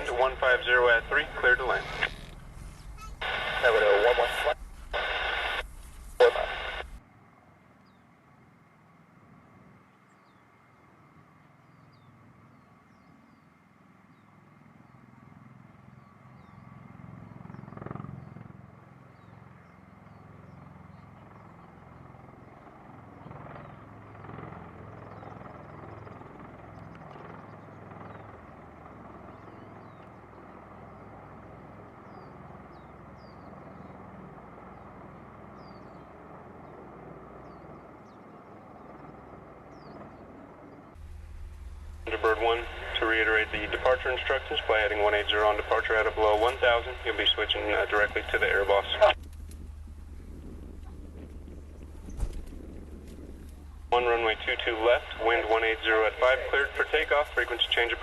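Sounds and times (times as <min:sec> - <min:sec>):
aircraft rotor and engine drone: 0:00.0 - 0:58.0
faint bird chirps: 0:02.6 - 0:03.5.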